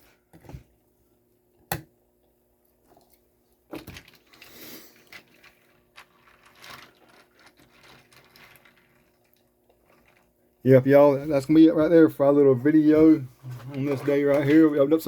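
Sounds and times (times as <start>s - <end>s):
plastic packaging rustling: 3.7s - 10.4s.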